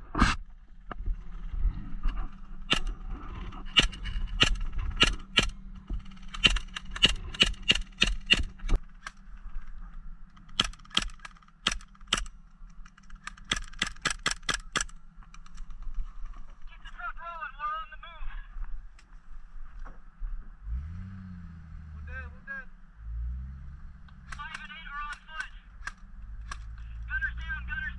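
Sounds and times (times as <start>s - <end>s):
airsoft guns firing: 3.7s - 8.8s.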